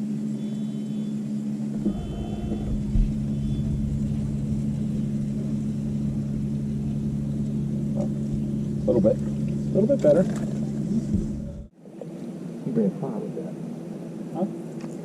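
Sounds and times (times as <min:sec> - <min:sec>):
boat motor humming: 0:00.0 - 0:12.6
low rumble: 0:01.7 - 0:11.8.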